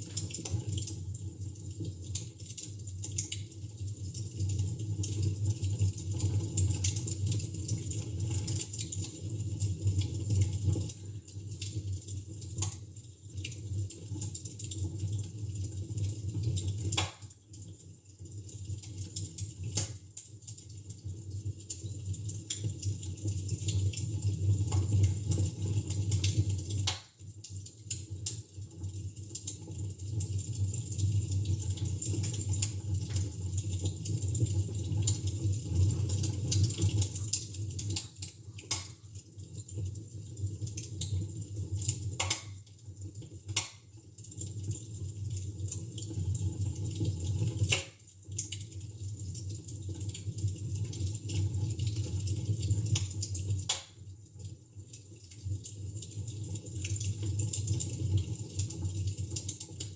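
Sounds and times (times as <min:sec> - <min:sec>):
fire crackling and popping: 0:10.7 - 0:31.1, 0:31.7 - 0:46.7, 0:47.6 - 0:50.6, 0:52.1 - 0:54.5.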